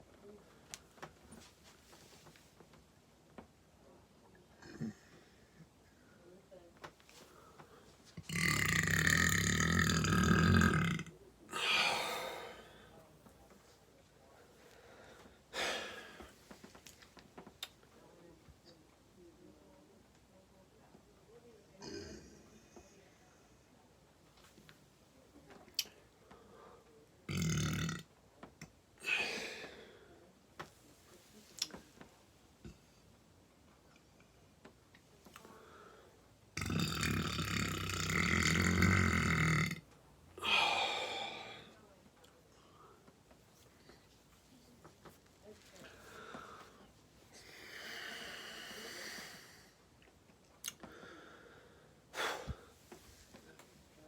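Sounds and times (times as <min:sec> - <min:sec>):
person burping: 0:04.6 - 0:05.1, 0:08.2 - 0:12.6, 0:21.8 - 0:22.4, 0:27.3 - 0:28.1, 0:29.0 - 0:29.8, 0:36.6 - 0:39.8, 0:40.4 - 0:41.6
breathy hissing sound: 0:11.5 - 0:13.0, 0:40.4 - 0:41.8, 0:46.0 - 0:49.8.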